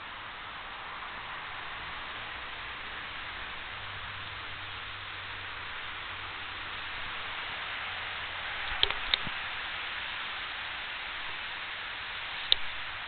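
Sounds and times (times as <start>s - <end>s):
recording hiss: 0.0s - 13.0s
sharp clicks: 8.7s - 9.4s.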